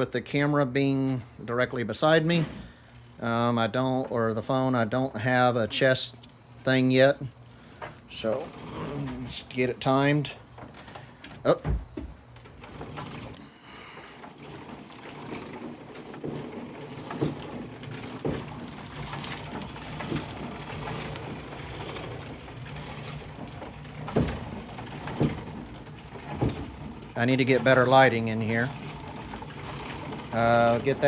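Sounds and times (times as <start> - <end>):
treadle lathe rumbling and clattering: 0.0 - 31.0.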